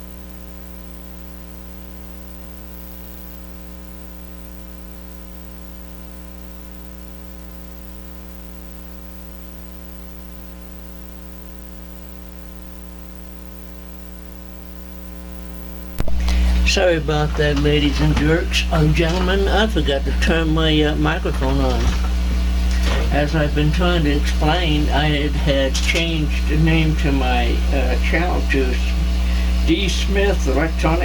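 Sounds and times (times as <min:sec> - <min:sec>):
electrical mains hum: 0:00.0 - 0:31.0.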